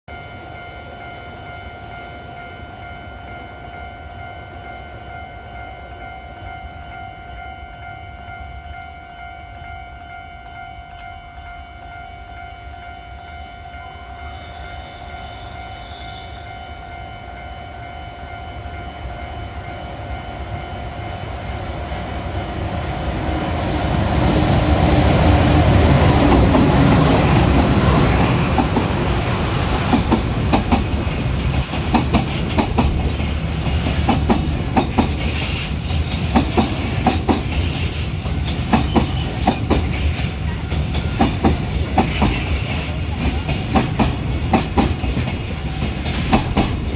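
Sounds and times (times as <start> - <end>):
electric locomotive rumbling past: 0.1 - 46.9
train wheels clattering over rail joints: 23.2 - 46.9.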